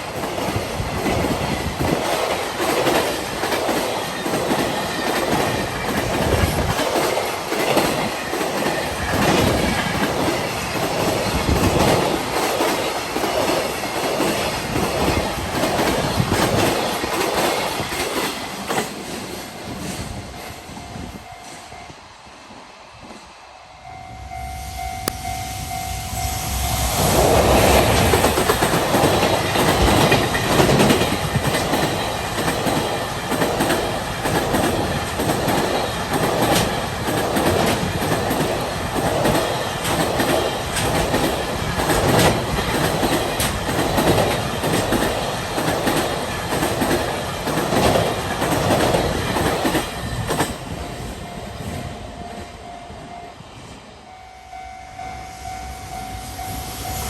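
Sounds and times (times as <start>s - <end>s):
train wheels clattering over rail joints: 0.0s - 20.1s, 27.1s - 51.0s.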